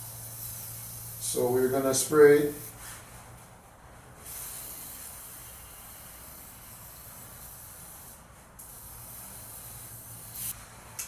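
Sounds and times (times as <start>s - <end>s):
aerosol can spraying: 0.0s - 1.4s, 4.2s - 10.6s.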